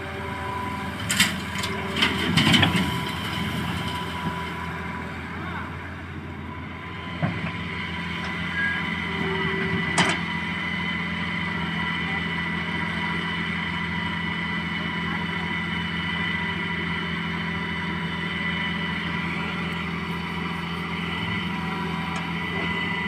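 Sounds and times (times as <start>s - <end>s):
excavator diesel engine running: 0.0s - 23.0s.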